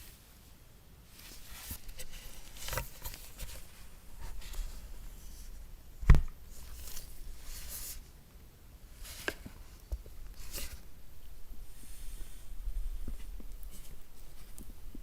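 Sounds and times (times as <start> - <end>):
package thump: 6.0 - 6.4.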